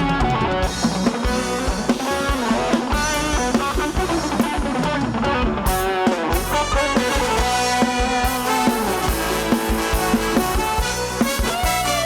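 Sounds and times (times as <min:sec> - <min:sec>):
drum kit beat: 0:00.0 - 0:12.0
guitar melody: 0:00.0 - 0:12.0.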